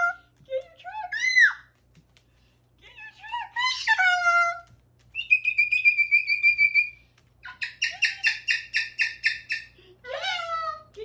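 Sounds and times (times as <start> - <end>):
cockatoo calling: 5.2 - 10.7.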